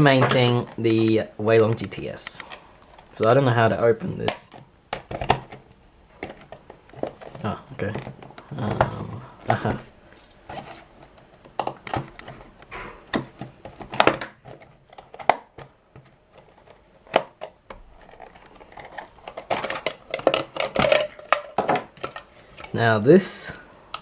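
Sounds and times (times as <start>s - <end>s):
packaging box being opened: 4.1s - 22.8s.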